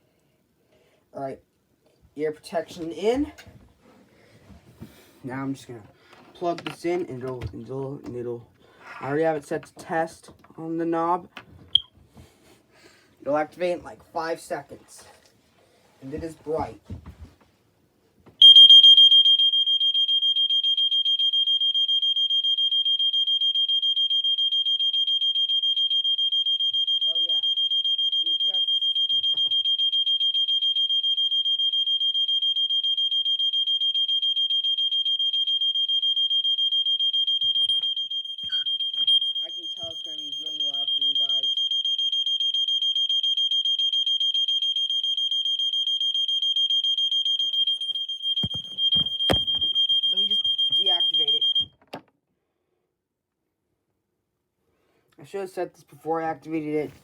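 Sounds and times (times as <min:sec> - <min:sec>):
smoke alarm pulsing tone: 0:11.7 - 0:11.9, 0:18.4 - 0:51.8.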